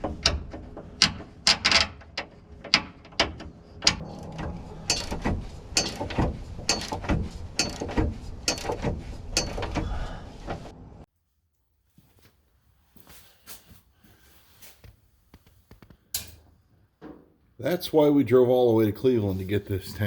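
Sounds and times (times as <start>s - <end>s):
metal tools clicking and clanking: 0.2s - 9.9s, 16.1s - 16.5s.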